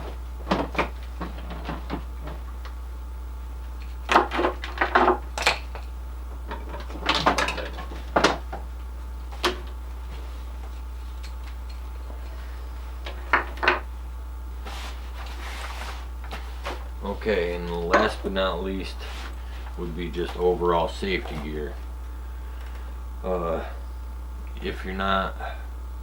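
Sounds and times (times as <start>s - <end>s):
hard objects knocking and clattering: 0.0s - 2.5s, 4.1s - 8.7s, 13.1s - 13.9s
low electrical hum: 0.0s - 26.0s.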